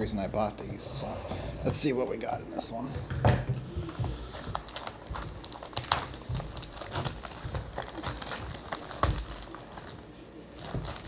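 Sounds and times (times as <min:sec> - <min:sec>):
packaging crinkling and tearing: 0:03.9 - 0:11.0.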